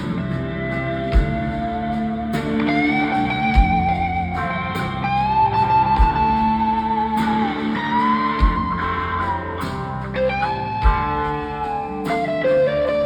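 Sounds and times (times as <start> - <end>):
electric lead guitar bending notes: 0.0 - 13.0
live rock band playing: 0.0 - 13.0
bass drum thumps: 1.1 - 2.0, 3.5 - 4.4, 5.9 - 6.9, 8.4 - 9.2, 10.8 - 11.8.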